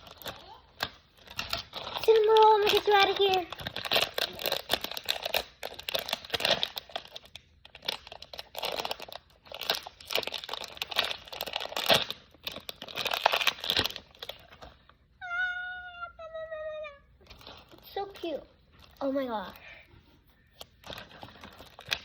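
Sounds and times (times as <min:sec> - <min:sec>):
crinkly packaging tearing: 0:00.0 - 0:14.8, 0:17.2 - 0:18.0, 0:20.8 - 0:22.0.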